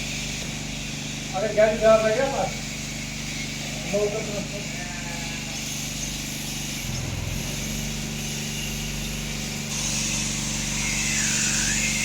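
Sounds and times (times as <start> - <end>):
electric clippers motor hum: 2.5 - 12.0
high hiss: 5.6 - 10.3.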